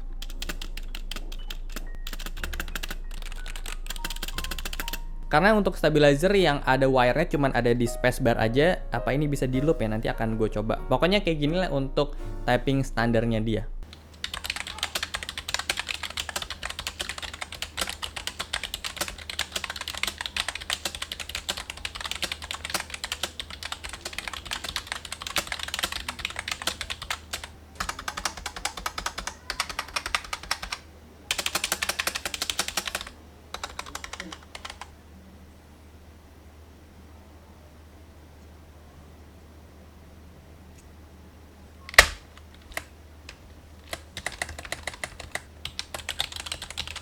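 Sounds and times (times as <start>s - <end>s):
keyboard typing clacks: 0.2s - 5.0s, 13.8s - 34.9s, 41.9s - 47.0s.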